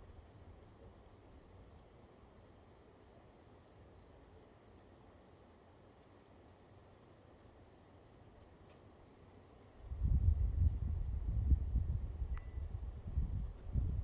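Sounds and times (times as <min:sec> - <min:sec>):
crickets trilling: 0:09.0 - 0:14.0.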